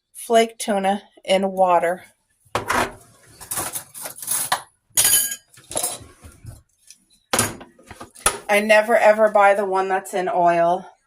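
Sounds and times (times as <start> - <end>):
kitchenware clinking and clattering: 2.6 - 6.6, 7.3 - 8.5.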